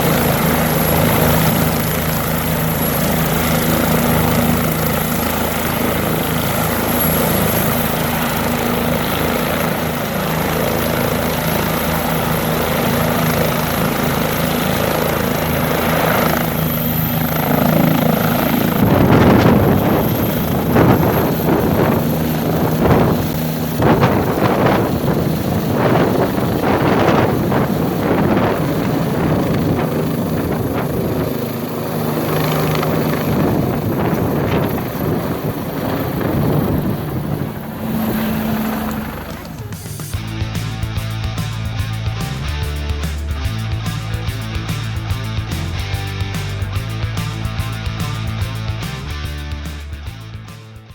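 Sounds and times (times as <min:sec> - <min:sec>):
wind buffeting microphone: 0:00.0 - 0:39.8
helicopter rotor beat: 0:00.0 - 0:50.9
helicopter turbine whine: 0:00.0 - 0:50.9.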